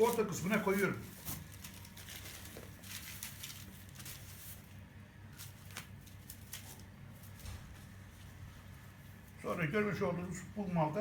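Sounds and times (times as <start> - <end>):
broomcorn stalks rustling and crackling: 0.0 - 7.4
low steady hum: 0.0 - 11.0.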